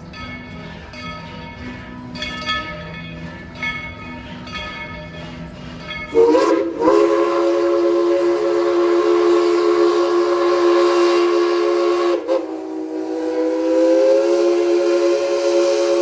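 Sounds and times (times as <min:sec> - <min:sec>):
steam locomotive whistle: 0:06.1 - 0:16.0.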